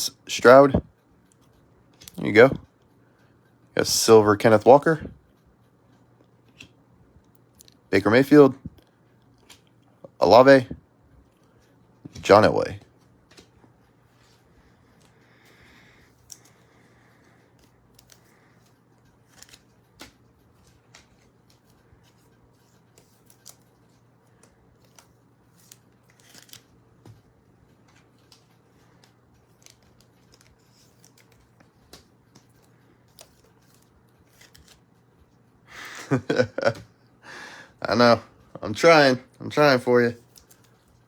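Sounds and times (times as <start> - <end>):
low room hum: 0.0 - 41.0
cards and foil packs handled: 11.4 - 35.4, 40.0 - 41.0.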